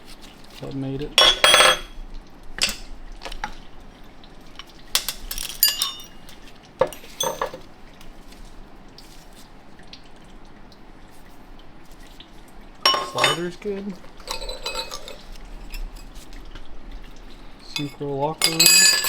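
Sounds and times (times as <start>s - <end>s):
metal parts clinking: 1.2s - 1.9s, 5.0s - 6.2s, 12.9s - 13.5s, 14.3s - 16.0s, 17.8s - 19.0s.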